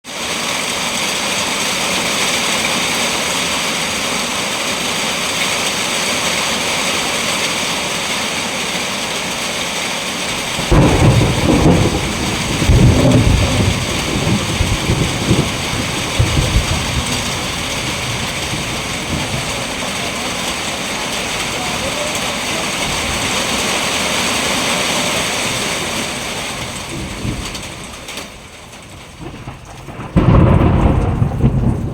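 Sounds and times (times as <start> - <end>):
heavy rain hissing: 0.1 - 31.9
rolling thunder rumble: 10.4 - 31.9.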